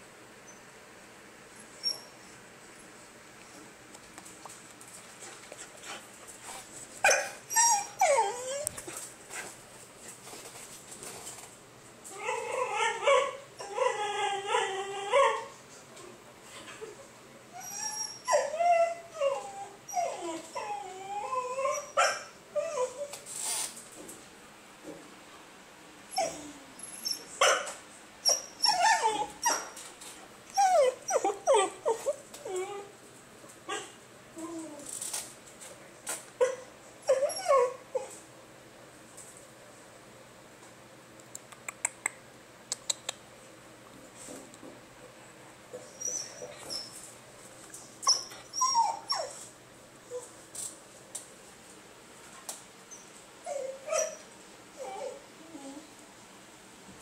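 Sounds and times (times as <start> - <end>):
dog whining and yipping: 7.0 - 8.8, 17.6 - 23.1, 26.1 - 27.6, 28.2 - 29.8, 30.5 - 32.9, 36.4 - 38.1, 45.8 - 47.0, 48.0 - 49.4, 52.9 - 55.8.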